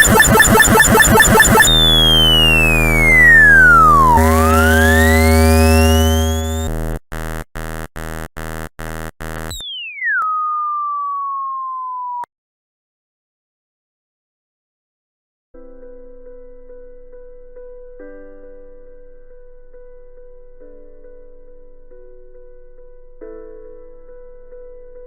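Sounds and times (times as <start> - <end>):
synthesized electronic glitch tones: 0.0 - 11.0.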